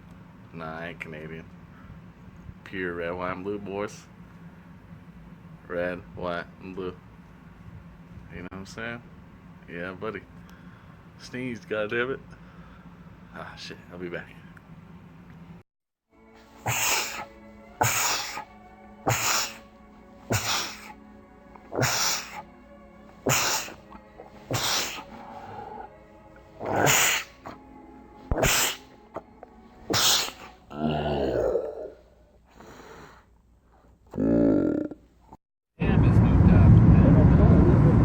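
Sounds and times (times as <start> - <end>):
faint music: 0.0 - 15.6, 16.2 - 32.1
man sneezing: 16.6 - 19.7, 20.3 - 21.0, 21.7 - 22.5, 23.2 - 25.2, 26.6 - 27.6, 28.3 - 29.0, 29.9 - 31.2.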